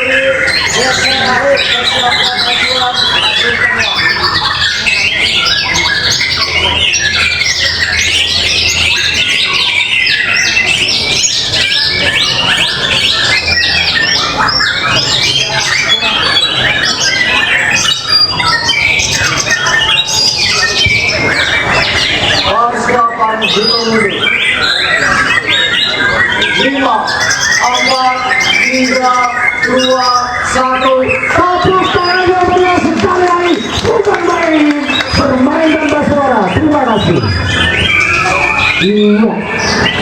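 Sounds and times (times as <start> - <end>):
caged songbirds singing: 0.0 - 40.0.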